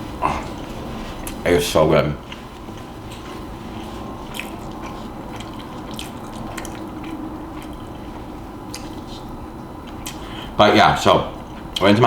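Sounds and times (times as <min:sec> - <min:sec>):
chewing with wet mouth smacks: 0:02.2 - 0:10.3.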